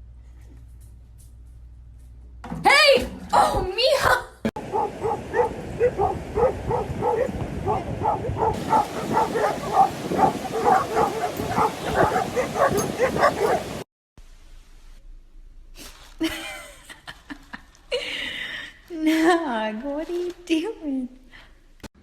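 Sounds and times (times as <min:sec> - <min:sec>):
dog barking: 0:04.6 - 0:13.8.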